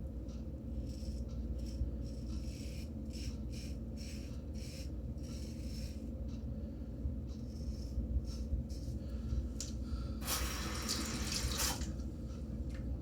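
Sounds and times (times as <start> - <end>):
low background hum: 0.0 - 13.0
sink tap running: 10.2 - 12.0.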